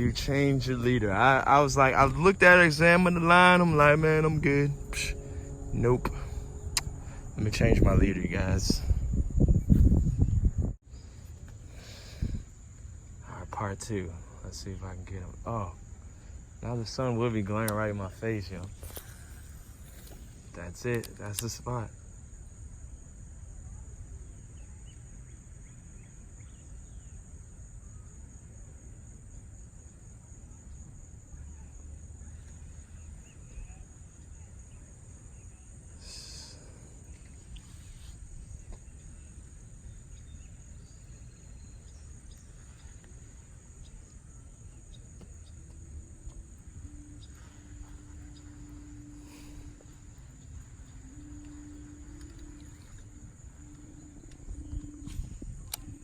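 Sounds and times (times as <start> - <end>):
low rumbling background: 0.0 - 20.7, 38.2 - 56.0
faint low hum: 0.0 - 56.0
high-pitched insect drone: 0.0 - 56.0.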